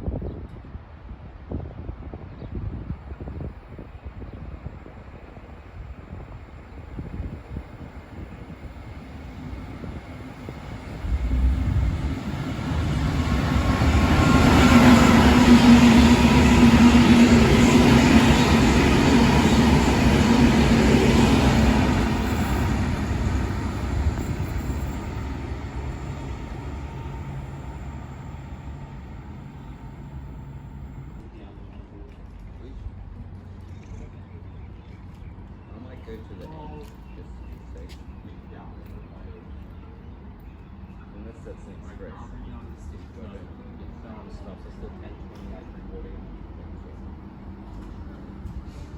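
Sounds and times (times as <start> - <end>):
train rumbling past: 4.5 - 31.3.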